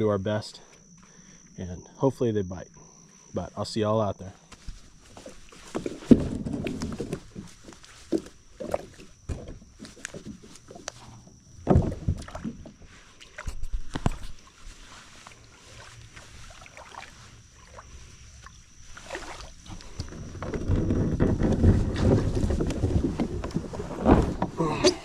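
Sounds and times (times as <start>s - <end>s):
knocks and bumps on a kayak: 4.5s - 12.9s, 19.0s - 25.0s.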